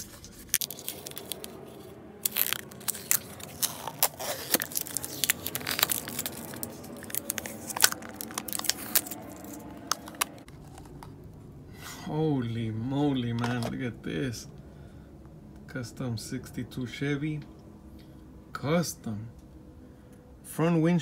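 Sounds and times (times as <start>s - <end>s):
packaging tearing and crinkling: 0.0s - 10.9s.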